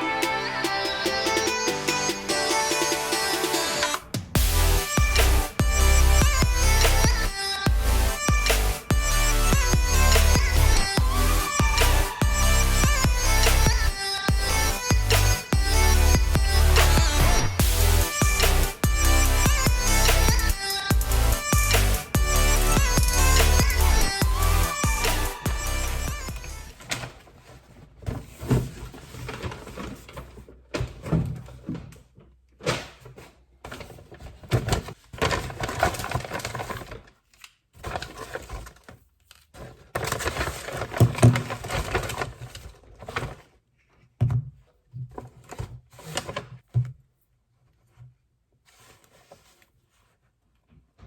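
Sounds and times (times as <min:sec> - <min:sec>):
packaging rustling: 0:33.0 - 0:43.6.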